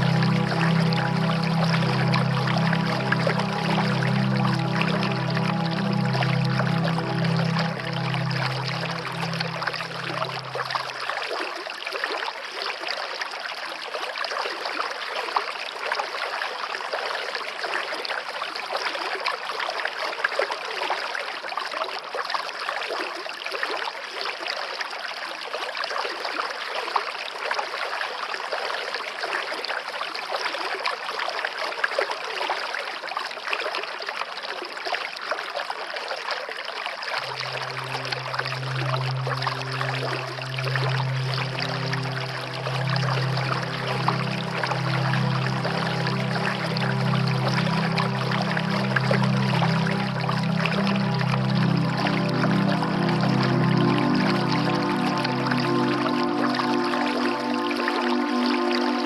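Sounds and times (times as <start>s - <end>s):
low held musical tone: 0.0s - 11.4s, 37.2s - 59.0s
stream water flowing: 0.0s - 59.0s.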